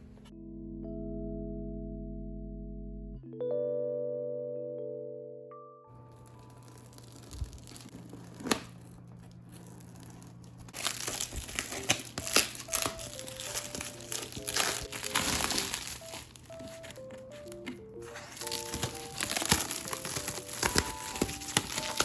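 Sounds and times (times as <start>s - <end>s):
packaging crinkling: 6.0s - 22.0s.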